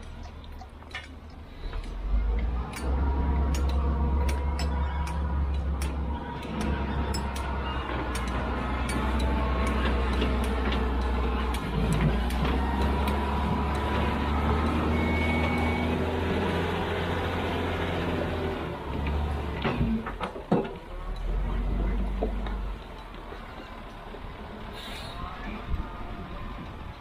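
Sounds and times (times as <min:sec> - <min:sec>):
faint clicks and clanks: 0:00.0 - 0:13.9, 0:19.0 - 0:24.2
diesel engine running: 0:00.0 - 0:27.0.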